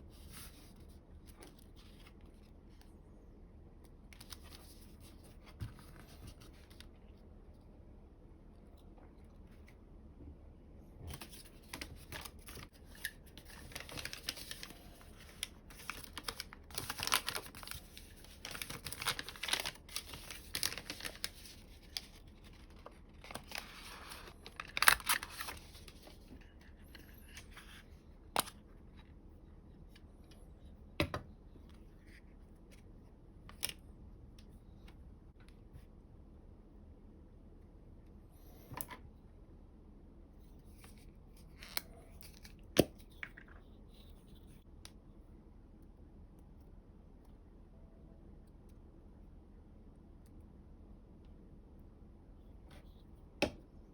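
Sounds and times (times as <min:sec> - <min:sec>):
paper being folded and creased: 0:11.1 - 0:28.5.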